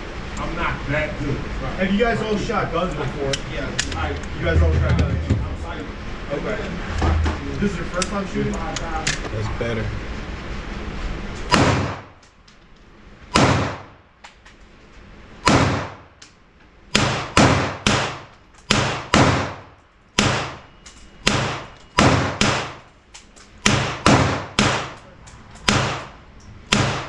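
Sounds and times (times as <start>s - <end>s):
gunshots with ringing tail: 13.4s - 14.0s, 15.5s - 16.1s, 20.2s - 22.8s.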